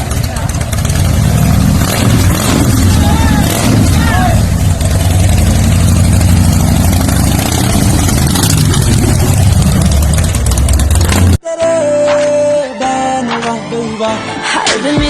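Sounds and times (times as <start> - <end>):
motorcycle engine running: 0.0 - 11.4
music: 11.4 - 15.0.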